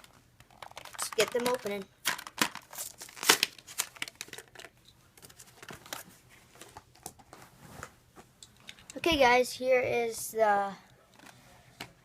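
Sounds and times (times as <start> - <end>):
plastic crinkling: 0.0 - 7.3
card tearing: 2.4 - 4.2.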